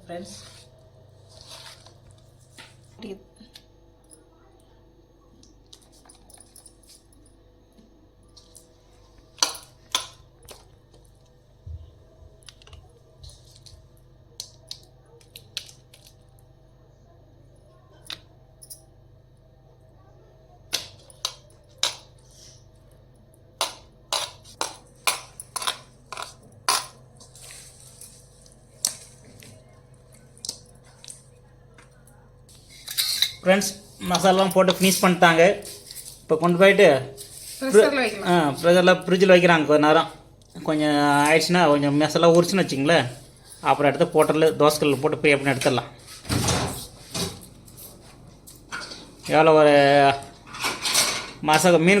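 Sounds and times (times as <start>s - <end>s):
utensils and dishes clinking: 23.6s - 29.0s, 32.5s - 36.3s, 50.3s - 51.4s.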